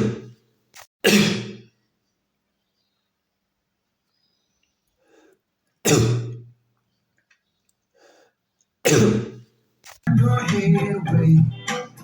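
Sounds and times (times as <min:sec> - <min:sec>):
person coughing: 0:01.0 - 0:01.7, 0:05.8 - 0:06.4, 0:08.8 - 0:09.4.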